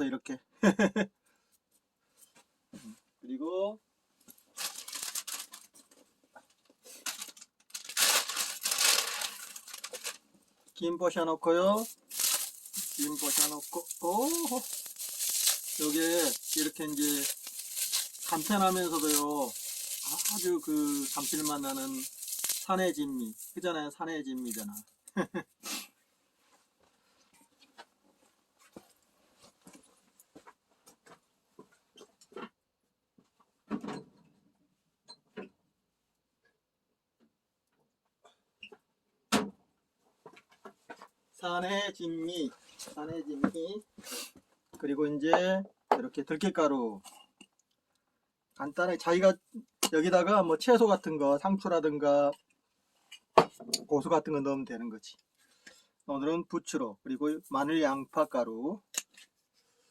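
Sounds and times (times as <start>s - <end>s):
dried seaweed crackling and tearing: 4.6s - 5.7s, 7.0s - 10.2s, 11.6s - 23.7s, 24.3s - 24.8s.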